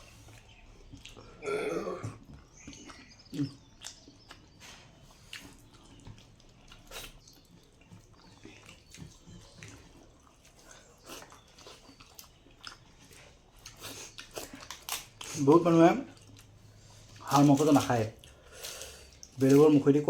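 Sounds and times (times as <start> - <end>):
person chewing with lip smacks: 0.1 - 1.5, 2.1 - 19.7.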